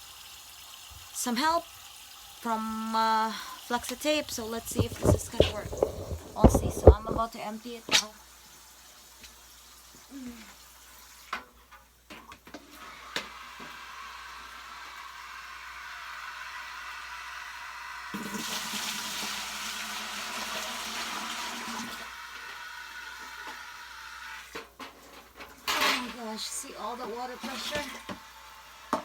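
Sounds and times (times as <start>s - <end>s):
water rushing from pipe: 0.8s - 7.3s
pan knocking: 4.6s - 7.3s.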